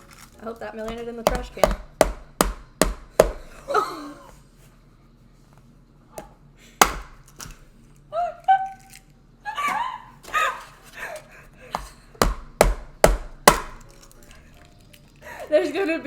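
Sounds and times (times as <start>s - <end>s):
eggs knocked against hard edge: 0.8s - 3.5s, 11.7s - 14.0s.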